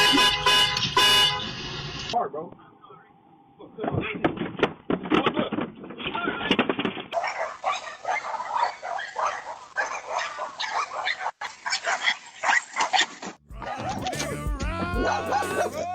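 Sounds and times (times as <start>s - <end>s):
dog barking and yipping: 7.1s - 14.3s, 15.0s - 15.9s
dog calls rising and falling: 7.2s - 15.9s.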